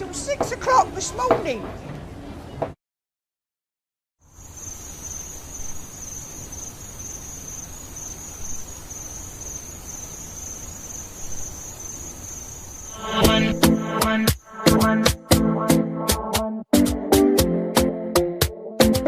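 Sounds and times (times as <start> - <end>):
insects trilling: 4.2 - 14.7
music with sharp beats: 13.2 - 15.5.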